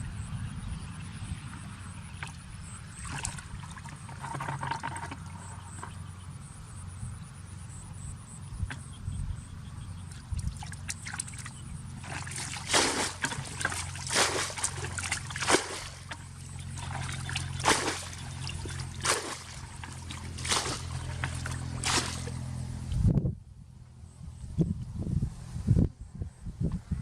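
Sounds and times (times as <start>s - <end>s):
water splashing and sloshing: 1.2s - 6.0s, 10.1s - 22.6s
low hum: 5.2s - 27.0s.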